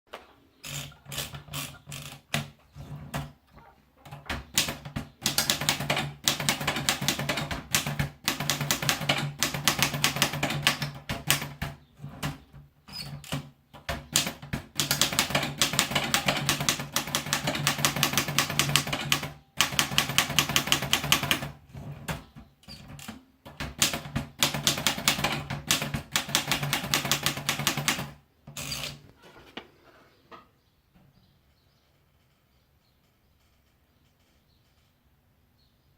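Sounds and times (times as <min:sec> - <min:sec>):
manual typewriter typing: 0:00.6 - 0:03.4, 0:04.1 - 0:29.1.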